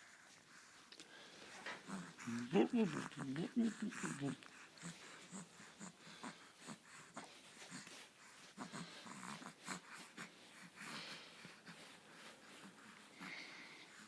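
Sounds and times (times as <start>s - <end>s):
baby grunting and snuffling: 1.7s - 7.8s.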